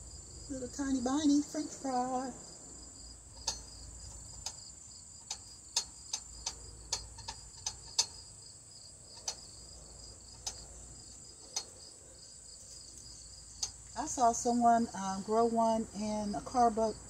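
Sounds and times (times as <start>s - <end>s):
crickets trilling: 0.0s - 17.0s
sharp clicks and snaps: 3.4s - 8.3s, 9.1s - 9.7s, 10.3s - 11.8s.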